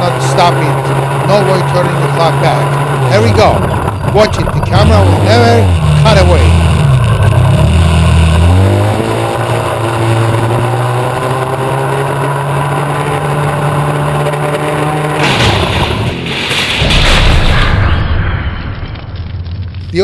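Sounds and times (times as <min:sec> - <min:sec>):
atv engine revving: 0:00.0 - 0:15.5.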